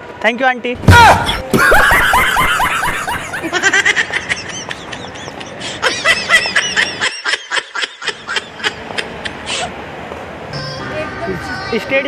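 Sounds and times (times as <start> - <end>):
high-pitched laughter: 1.3 - 9.7.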